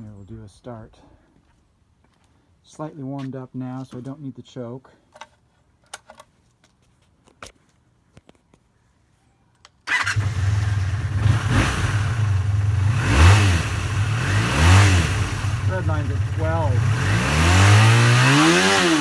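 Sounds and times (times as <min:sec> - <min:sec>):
motorcycle engine starting and revving: 0:09.9 - 0:19.0.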